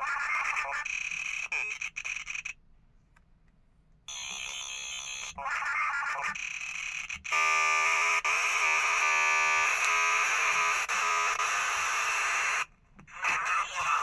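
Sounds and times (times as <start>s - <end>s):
harsh electronic buzzing: 6.0s - 14.0s.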